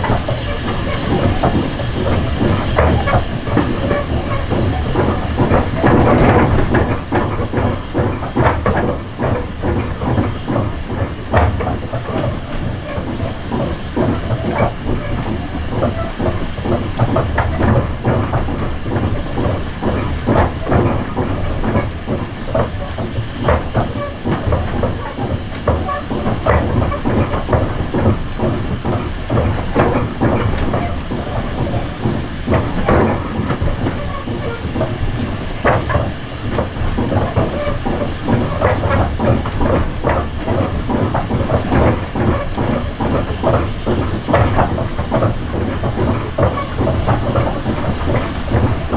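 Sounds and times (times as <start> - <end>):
rail joint clicks and knocks: 0.0 - 48.9
train wheels rumbling: 0.0 - 48.9.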